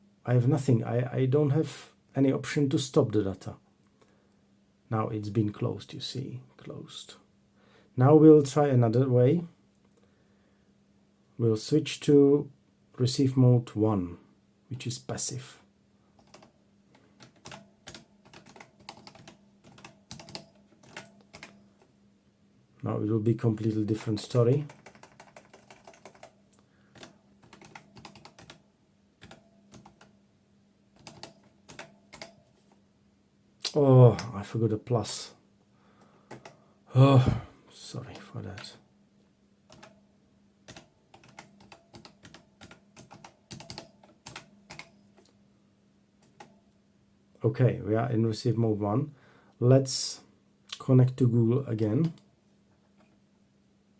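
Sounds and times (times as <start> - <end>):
faint steady hum: 0.0 - 53.9
keyboard typing: 16.2 - 21.6, 24.3 - 28.6, 29.2 - 30.1, 31.0 - 32.4, 36.3 - 36.6, 39.7 - 40.0, 40.7 - 45.3.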